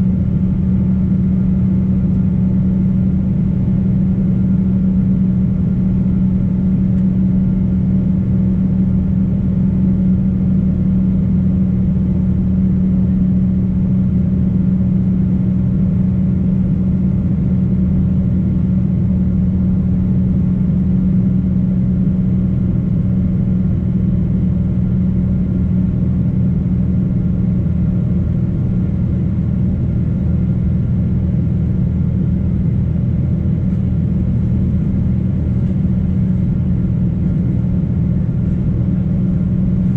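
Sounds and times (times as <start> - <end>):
jet engines droning: 22.7 - 39.9.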